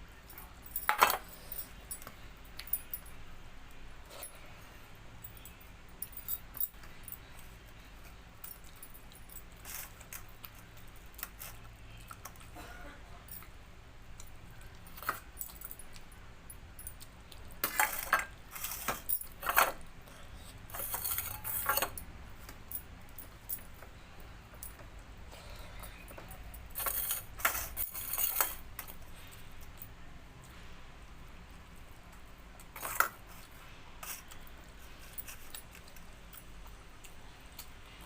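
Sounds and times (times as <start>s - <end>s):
dishes and cutlery clinking: 0.8s - 2.1s, 17.6s - 19.8s, 20.7s - 22.1s.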